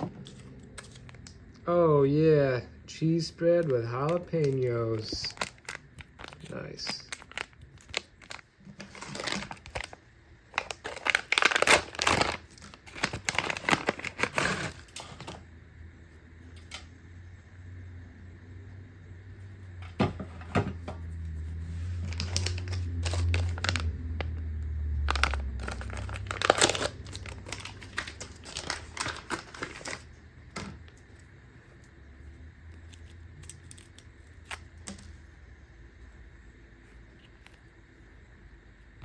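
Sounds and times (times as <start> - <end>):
plastic packaging crinkling: 0.0 - 1.5, 3.5 - 15.4, 21.9 - 24.4, 25.0 - 31.2
plastic packaging tearing: 3.6 - 15.4, 22.0 - 24.4, 25.0 - 30.2.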